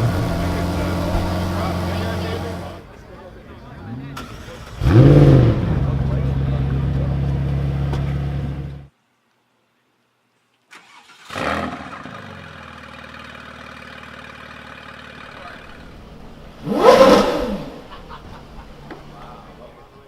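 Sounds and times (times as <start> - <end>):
engine rev blip: 0.0 - 2.8, 15.6 - 18.2
car engine starting and idling: 0.0 - 8.9, 10.7 - 20.0.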